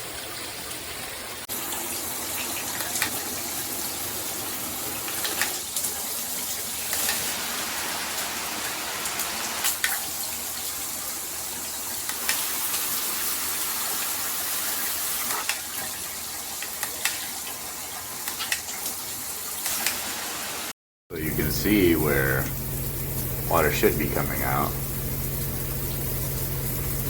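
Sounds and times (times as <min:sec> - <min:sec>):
shower head spraying water: 0:19.5 - 0:27.0.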